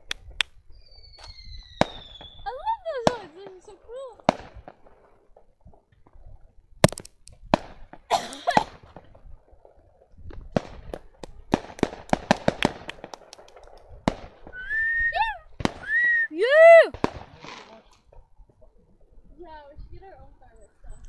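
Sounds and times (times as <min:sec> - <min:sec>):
firework crackling pops: 0:00.0 - 0:05.5, 0:06.8 - 0:16.2, 0:16.9 - 0:18.2
high steady whistle: 0:00.7 - 0:02.4, 0:14.6 - 0:16.5
firework bangs: 0:01.0 - 0:05.1, 0:10.3 - 0:17.9.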